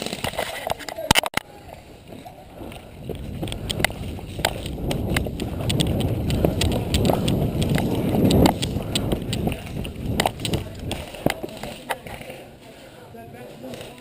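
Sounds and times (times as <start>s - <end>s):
gear rustling and rattling: 2.1s - 12.2s
quick footsteps: 2.1s - 12.4s.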